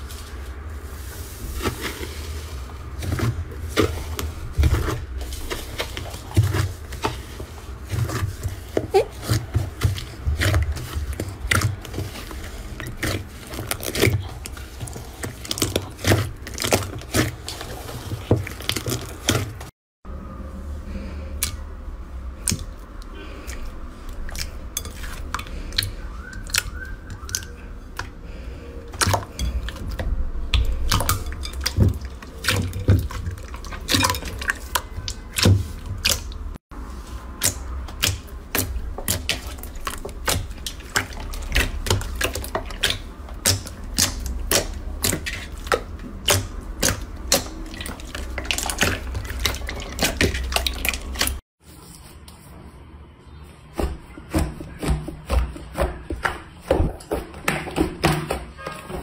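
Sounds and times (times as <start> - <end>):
slime squishing with wet clicks: 22.4 - 28.2, 28.9 - 36.6, 37.4 - 51.4.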